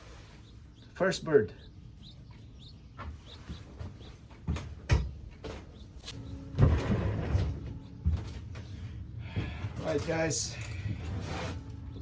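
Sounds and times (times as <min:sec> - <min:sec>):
sharp knocks and clatters: 0:03.0 - 0:08.8.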